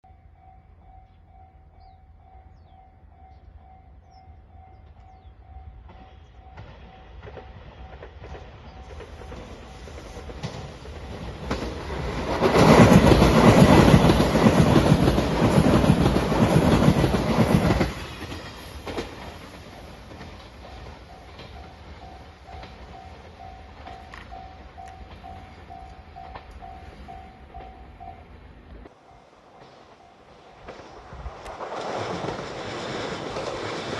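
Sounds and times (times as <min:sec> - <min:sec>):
crossing warning bell ringing: 0:00.0 - 0:10.7, 0:17.6 - 0:31.2
train passing: 0:00.0 - 0:33.9
wheels clacking over rail joints: 0:05.8 - 0:33.9.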